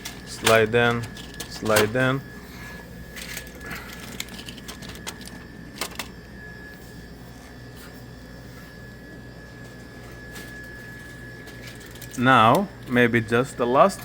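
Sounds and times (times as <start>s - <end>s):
steady hum: 0.0s - 14.0s
gum packs clicking into coils: 3.2s - 6.1s.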